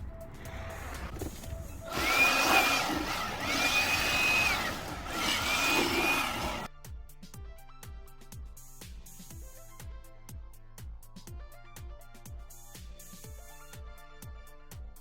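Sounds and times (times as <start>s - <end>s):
small electric motor whining: 0.7s - 6.7s.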